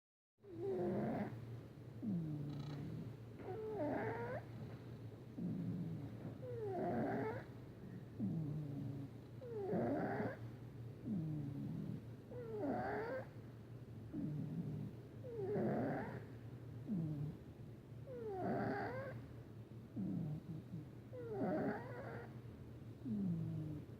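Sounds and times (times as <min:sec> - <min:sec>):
cat snoring: 0:00.5 - 0:01.4, 0:02.0 - 0:04.5, 0:05.4 - 0:07.5, 0:08.2 - 0:10.4, 0:11.0 - 0:13.3, 0:14.1 - 0:17.4, 0:18.1 - 0:19.2, 0:20.0 - 0:22.4, 0:23.0 - 0:23.9.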